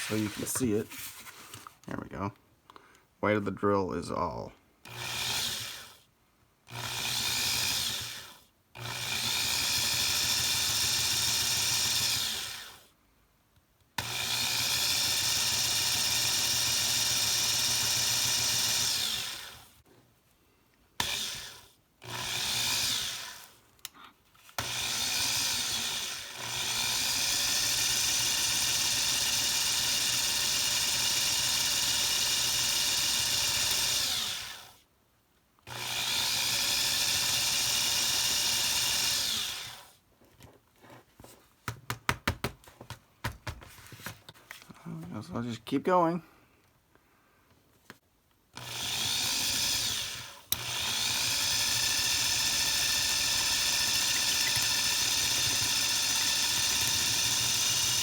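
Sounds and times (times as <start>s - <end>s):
electric drill whining: 4.9s - 6.0s, 6.7s - 12.9s, 14.0s - 19.7s, 21.0s - 23.6s, 24.6s - 34.8s, 35.7s - 40.0s, 48.6s - 58.0s.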